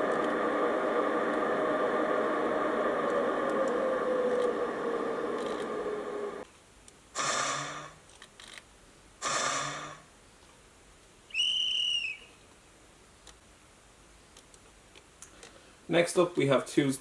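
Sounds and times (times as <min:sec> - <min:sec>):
steady whirring: 0:00.0 - 0:06.4
short noisy bursts: 0:07.2 - 0:08.0, 0:09.2 - 0:10.1
high whistle note: 0:11.3 - 0:12.4.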